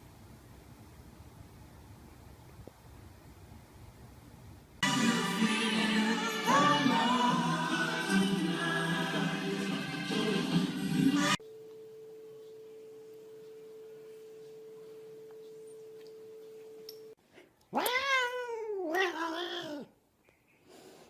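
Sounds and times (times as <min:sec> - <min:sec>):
cat meowing: 0:17.7 - 0:19.9.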